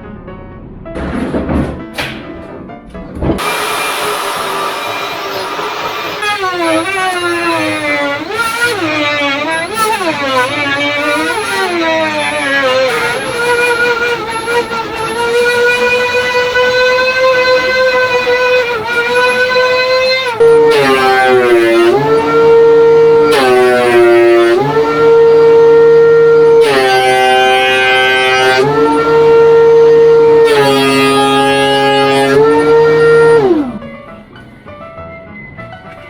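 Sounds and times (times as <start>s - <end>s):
router whining and cutting wood: 3.4s - 33.9s.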